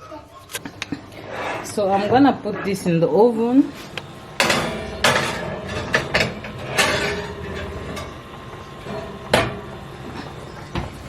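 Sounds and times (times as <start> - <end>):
kitchen knocks and clicks: 3.9 - 11.0.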